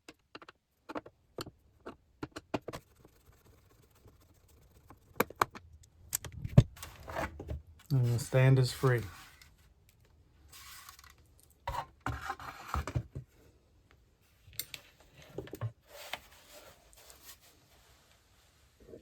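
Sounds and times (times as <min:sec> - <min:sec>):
faint rubbing: 0:02.7 - 0:05.2, 0:07.9 - 0:09.6.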